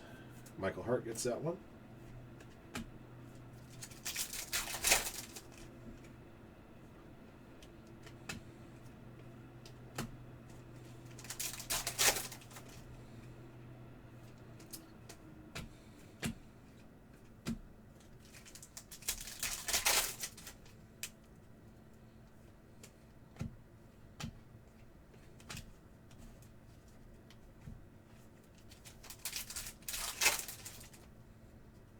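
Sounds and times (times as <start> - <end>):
cards rustling against each other: 2.0 - 5.7, 10.8 - 13.0, 18.0 - 20.8, 28.5 - 31.1.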